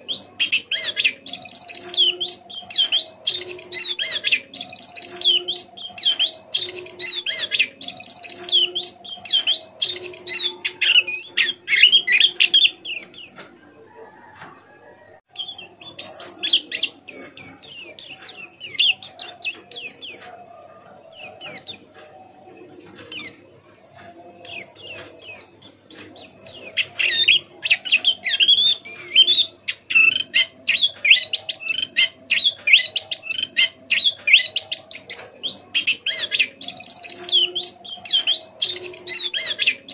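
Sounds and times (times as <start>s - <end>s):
bird twittering high chirps: 0.0s - 13.4s, 15.3s - 20.4s, 24.0s - 39.9s.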